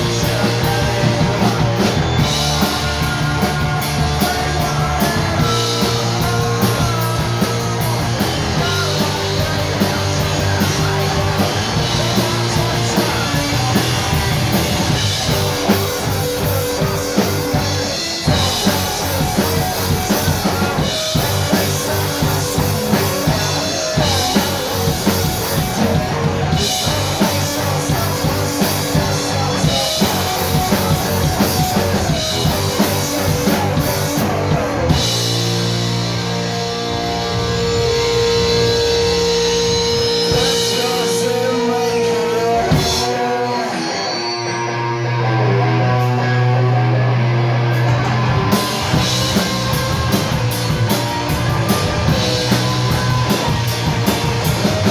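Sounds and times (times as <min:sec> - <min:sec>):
rock band playing live: 0:00.0 - 0:54.9.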